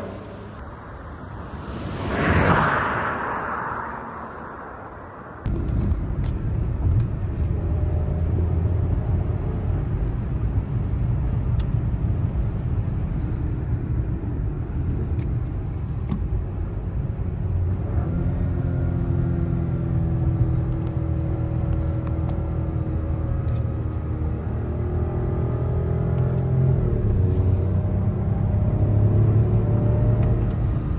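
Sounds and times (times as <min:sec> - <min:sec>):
steady engine tone: 0:00.0 - 0:05.5
car engine low rumble: 0:00.0 - 0:30.9.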